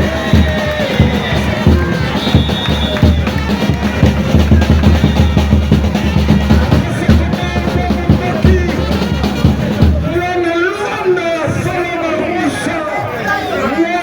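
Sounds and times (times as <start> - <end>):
drums playing fast rhythm: 0.0 - 10.7.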